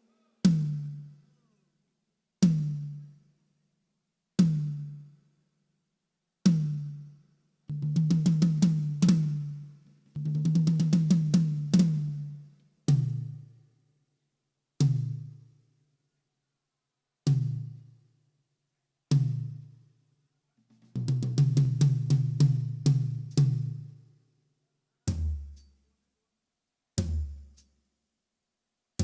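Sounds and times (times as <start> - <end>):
booming drum through pa: 20.9 - 23.8, 25.1 - 25.6, 27.0 - 27.6.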